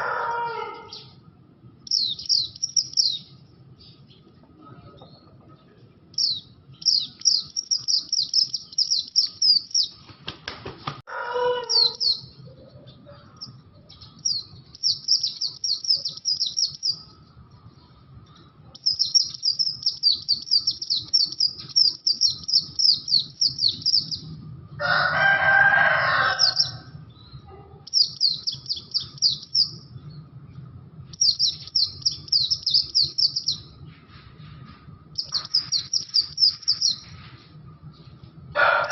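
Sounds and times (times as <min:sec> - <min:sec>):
bird twittering: 0:01.8 - 0:03.3, 0:06.2 - 0:10.0, 0:11.6 - 0:12.4, 0:13.3 - 0:17.2, 0:18.8 - 0:24.3, 0:27.9 - 0:29.9, 0:31.1 - 0:33.8, 0:35.1 - 0:37.1.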